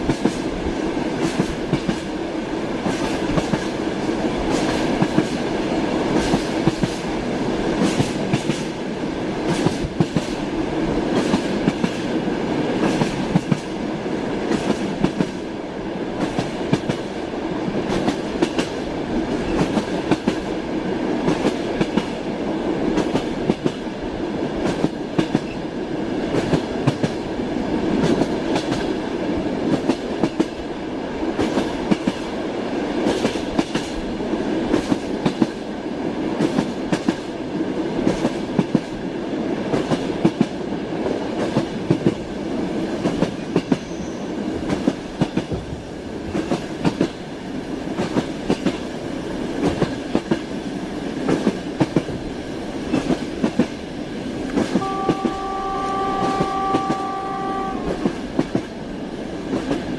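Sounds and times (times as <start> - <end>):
train wheels clattering on rails: 0.0 - 15.5, 16.1 - 30.7, 31.3 - 59.9
train horn: 54.7 - 58.2.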